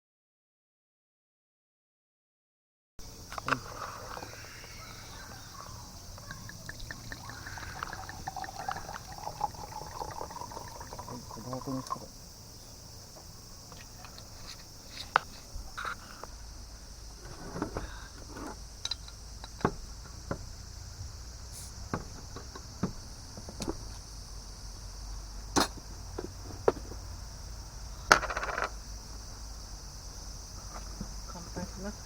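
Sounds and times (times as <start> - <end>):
insects chirring: 3.0 - 32.0
small objects clicking and knocking: 28.1 - 28.8.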